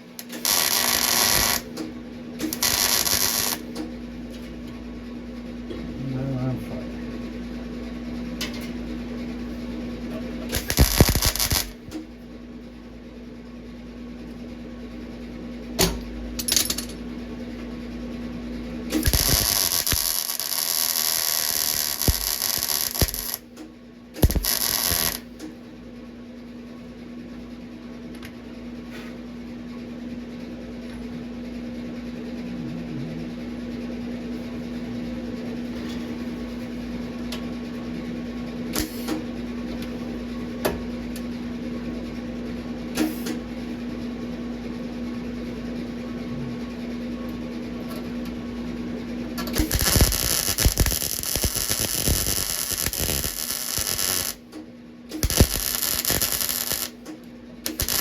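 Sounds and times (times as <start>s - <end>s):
steady hum: 0.0s - 58.0s
welder crackling: 0.1s - 3.8s, 10.5s - 12.0s, 18.9s - 23.5s, 24.2s - 25.3s, 49.4s - 58.0s.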